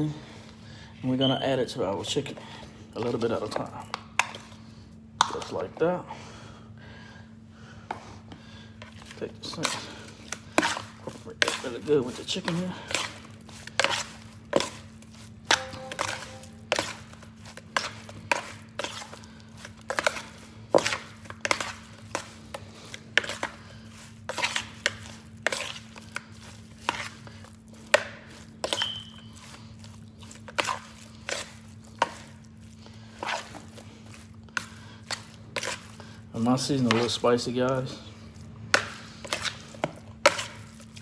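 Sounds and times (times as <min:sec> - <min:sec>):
chicken slapping in a bowl: 0:08.8 - 0:41.0.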